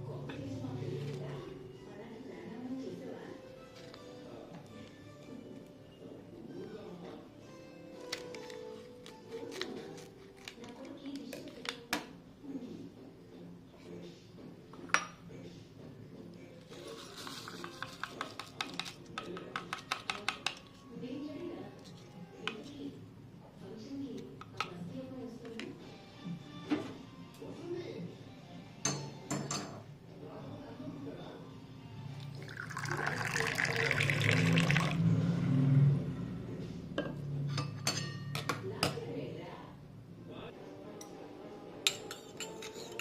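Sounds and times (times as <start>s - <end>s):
water pouring into a cup: 32.2s - 35.1s.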